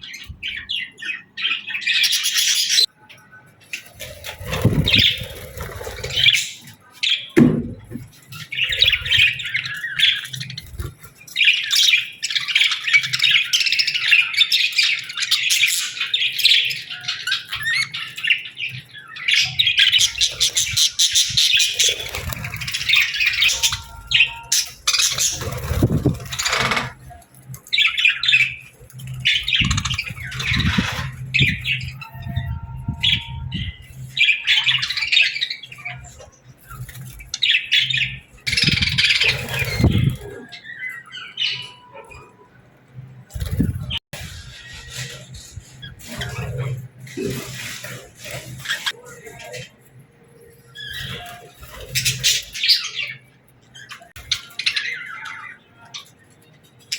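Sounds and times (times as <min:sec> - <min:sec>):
budgerigars chirping and warbling: 0:00.0 - 0:56.9
low thumps: 0:07.4 - 0:08.1.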